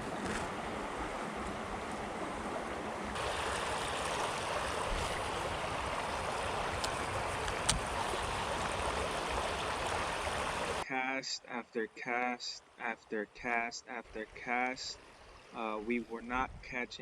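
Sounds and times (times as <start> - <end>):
creek water rushing: 0.0 - 10.9
faint clicks: 6.8 - 7.8.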